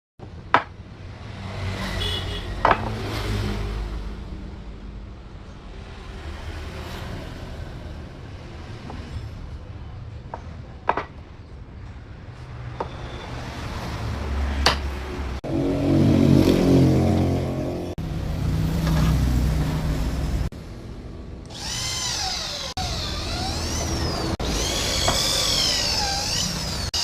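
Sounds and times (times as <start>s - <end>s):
wooden parts knocking: 2.6s - 3.0s, 10.3s - 11.3s, 14.6s - 14.9s.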